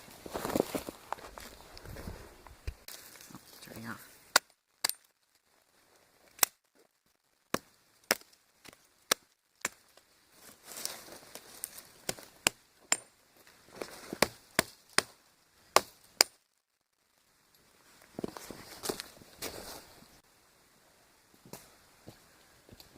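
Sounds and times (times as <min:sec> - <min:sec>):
rustling: 0:00.0 - 0:12.5, 0:13.3 - 0:14.9, 0:17.0 - 0:20.2
tomahawk chopping into wood: 0:14.2 - 0:15.2.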